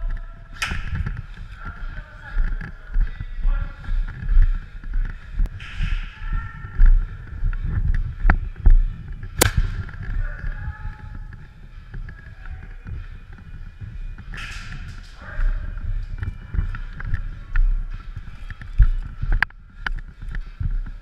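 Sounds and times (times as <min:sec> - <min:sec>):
low thumping and rumble: 0:02.5 - 0:21.0
sharp click: 0:09.4 - 0:10.0.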